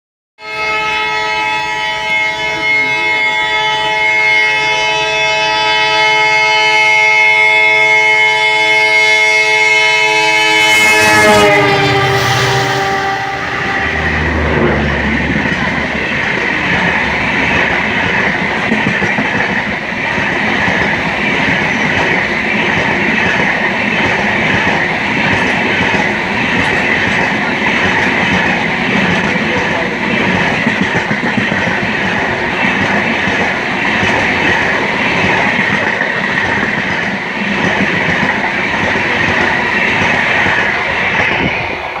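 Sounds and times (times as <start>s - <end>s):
train wheels rolling on rails: 9.4s - 42.0s.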